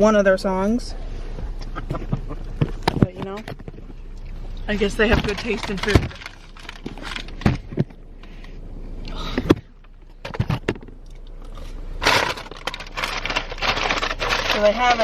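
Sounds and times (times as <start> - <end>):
packaging rustle: 4.8 - 7.8, 12.0 - 15.0.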